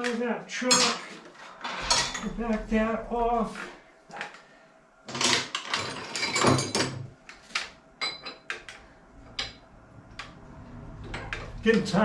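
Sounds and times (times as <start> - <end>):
metal tools clanking and knocking: 0.7 - 3.4, 5.1 - 7.1, 8.0 - 8.6.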